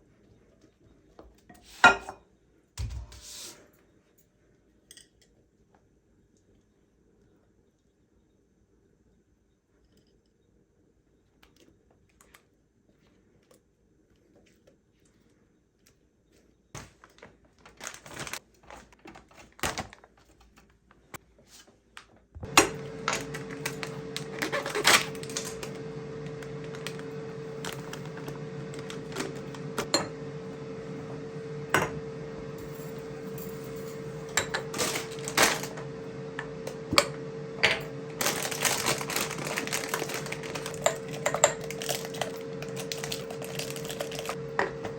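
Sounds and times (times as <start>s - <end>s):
electric motor humming: 22.4s - 44.9s
kitchen clicks and clatter: 37.7s - 44.8s.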